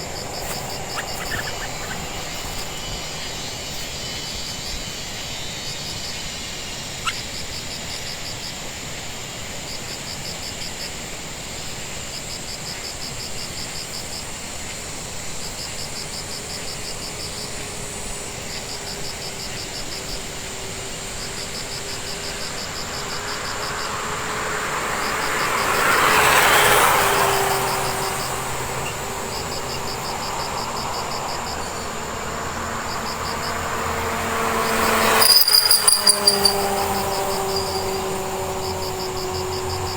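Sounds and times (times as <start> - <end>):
small animal chirping: 35.1 - 36.7.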